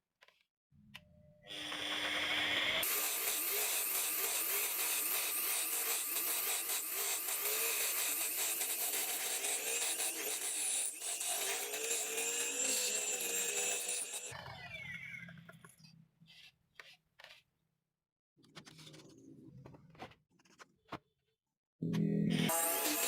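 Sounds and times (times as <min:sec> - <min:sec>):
wood being cut on a lathe: 0:01.5 - 0:14.4, 0:22.5 - 0:23.0.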